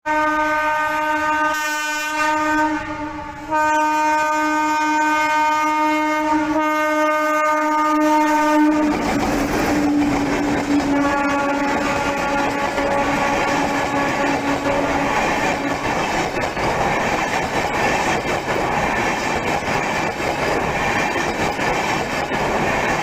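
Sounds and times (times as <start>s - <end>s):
train horn blasts: 0.0s - 16.1s
wheels clattering on rails: 8.7s - 23.0s.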